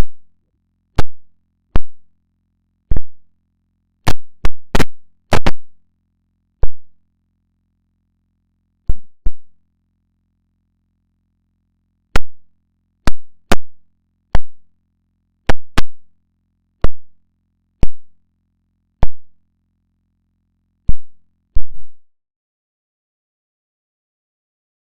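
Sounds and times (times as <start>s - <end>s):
faint low hum: 0.0s - 22.1s
sharp loud clicks: 4.1s - 5.7s, 13.1s - 13.7s, 15.5s - 16.0s.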